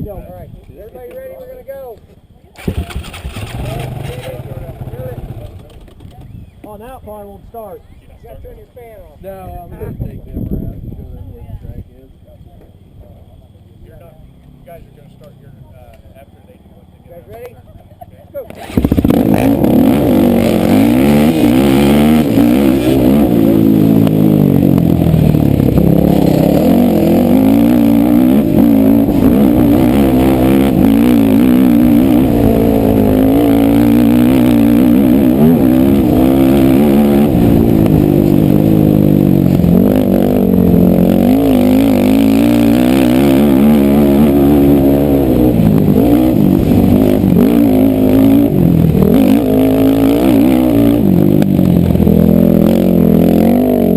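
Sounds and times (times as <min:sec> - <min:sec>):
quad engines revving: 0:02.6 - 0:06.4, 0:18.5 - 0:53.9.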